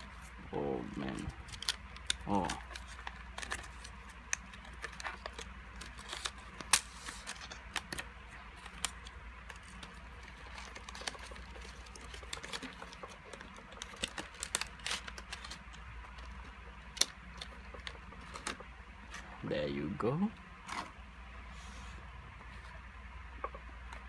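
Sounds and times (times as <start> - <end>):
low steady hum: 0.0 - 24.0
wallet and packaging clicking: 1.0 - 18.7.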